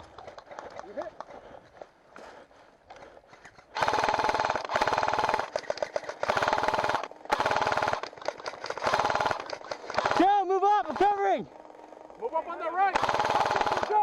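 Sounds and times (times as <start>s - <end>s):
airsoft gun full-auto bursts: 3.7s - 11.8s, 12.8s - 14.0s.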